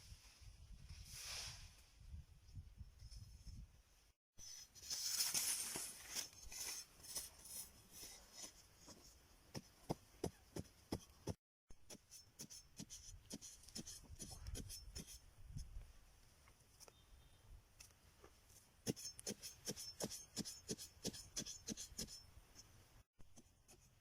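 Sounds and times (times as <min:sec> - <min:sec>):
rasping scrape on bamboo: 0:11.9 - 0:15.2, 0:18.8 - 0:22.3.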